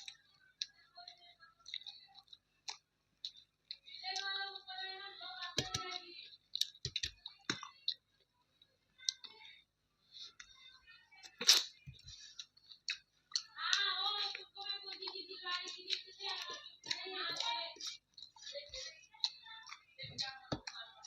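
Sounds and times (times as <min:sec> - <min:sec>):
chewing mouth sounds: 0:01.6 - 0:04.3, 0:11.3 - 0:20.9.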